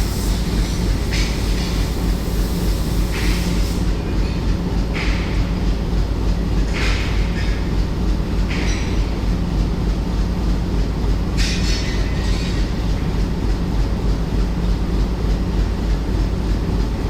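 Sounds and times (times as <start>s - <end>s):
hissing wheel noise: 0.0s - 4.0s
train rumbling on track: 0.0s - 17.0s.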